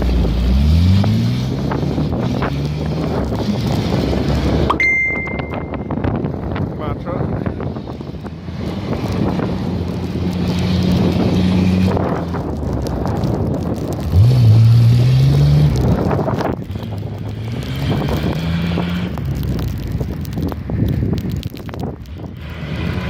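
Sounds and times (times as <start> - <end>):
vehicle engine revving: 0.0 - 4.8, 5.8 - 23.0
wind noise on microphone: 0.0 - 23.0.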